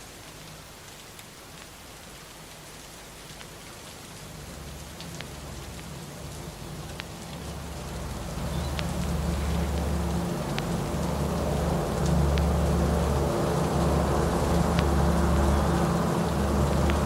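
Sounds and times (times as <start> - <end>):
rain hissing: 0.0 - 17.0.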